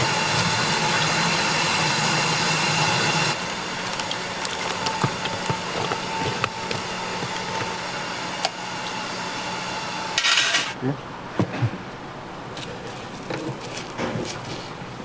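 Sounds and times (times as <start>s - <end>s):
machine hum: 0.0s - 10.8s.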